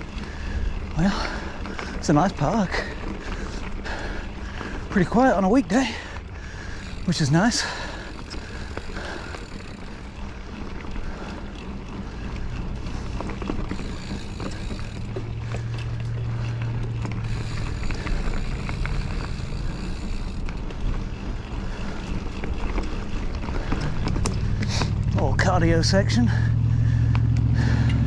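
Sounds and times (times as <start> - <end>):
bike clicks and rattles: 0.0 - 28.0
bike tyres rolling on dirt: 0.0 - 28.0
low hum: 5.6 - 28.0.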